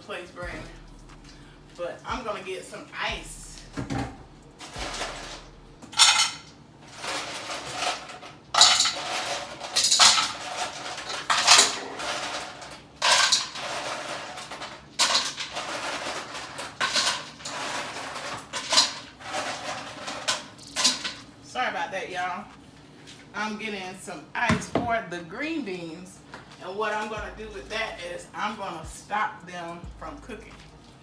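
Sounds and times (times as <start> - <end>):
ice cubes clattering into bowl: 4.6 - 21.3.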